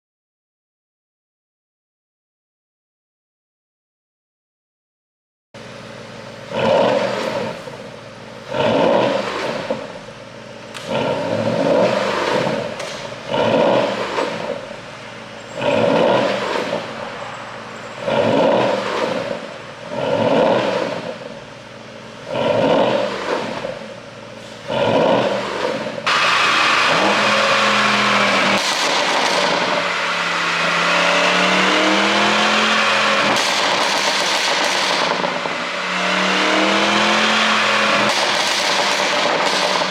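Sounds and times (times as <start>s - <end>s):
car engine revving with crackles: 5.6s - 39.9s.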